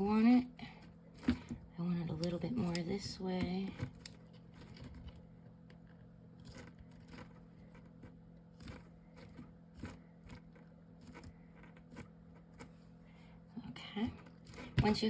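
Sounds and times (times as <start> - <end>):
steady low hum: 0.0 - 15.0
paper rustling and tapping: 2.2 - 5.2.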